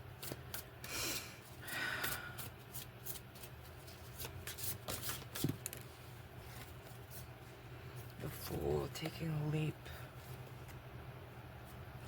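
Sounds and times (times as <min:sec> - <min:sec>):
cards being shuffled: 0:00.1 - 0:07.3.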